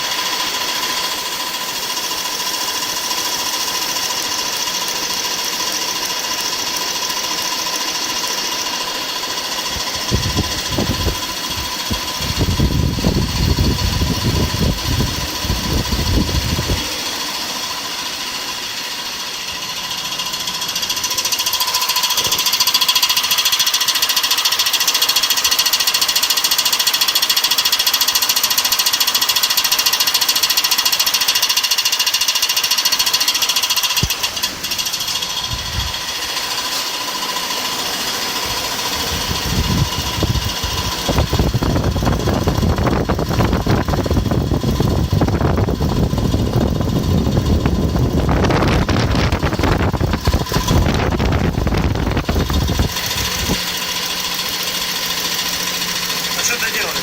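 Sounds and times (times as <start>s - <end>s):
engine knocking clatter: 0.0s - 57.0s
low rumble: 35.1s - 36.2s.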